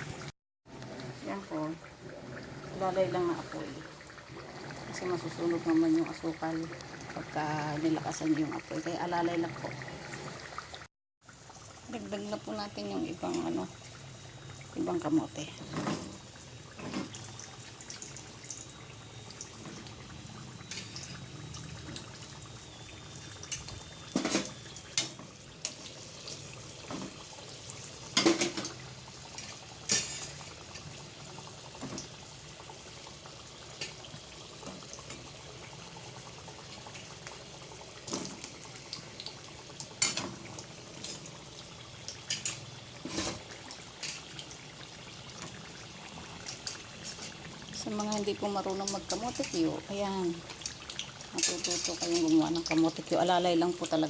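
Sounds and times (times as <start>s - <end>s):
food sizzling in oil: 0.0s - 54.0s.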